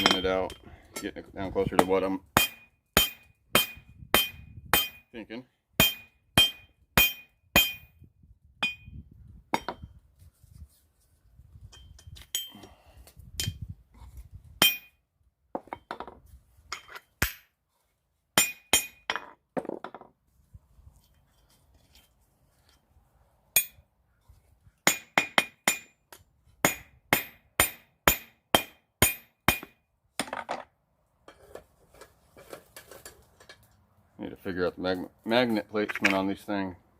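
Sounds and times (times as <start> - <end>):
hammer striking metal on anvil: 1.8 - 5.0, 5.8 - 7.9, 14.6 - 14.9, 18.4 - 19.2, 24.9 - 25.9, 26.6 - 29.8.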